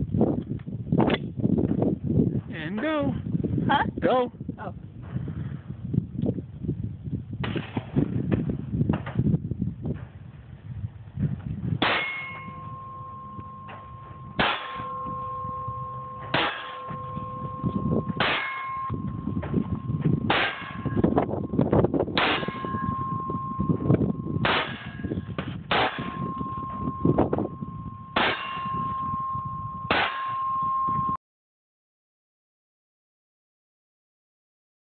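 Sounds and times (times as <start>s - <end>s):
steel target ringing: 11.8s - 31.2s
gunshots: 25.7s - 26.2s.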